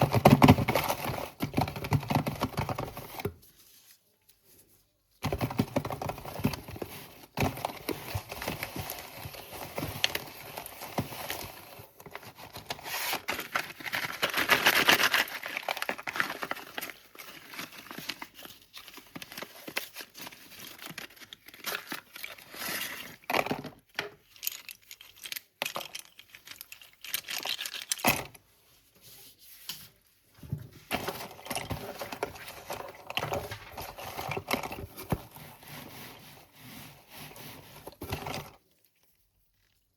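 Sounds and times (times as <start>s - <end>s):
packaging crinkling and tearing: 6.0s - 28.4s.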